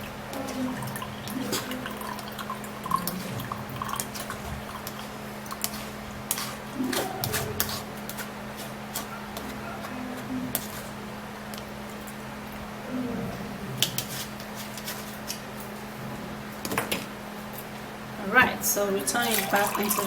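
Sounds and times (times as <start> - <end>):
liquid dripping through a sieve: 0.0 - 8.7, 19.1 - 20.0
steady low hum: 0.0 - 20.0
utensils tapping a container: 19.1 - 20.0.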